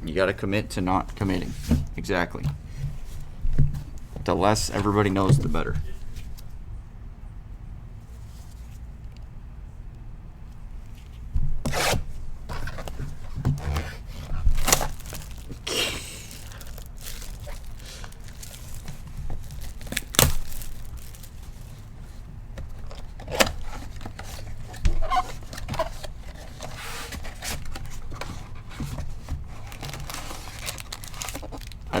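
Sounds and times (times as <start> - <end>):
cardboard taps and rustles: 12.4 - 15.6, 16.2 - 21.9
plastic wrapping tearing and crinkling: 12.5 - 22.0, 29.4 - 32.0.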